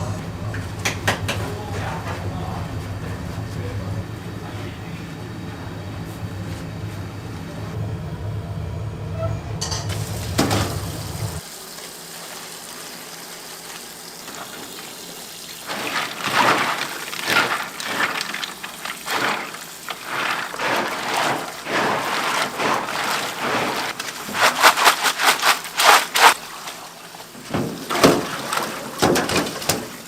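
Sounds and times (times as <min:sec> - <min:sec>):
steady low hum: 0:00.0 - 0:11.4
frying noise: 0:09.6 - 0:30.0.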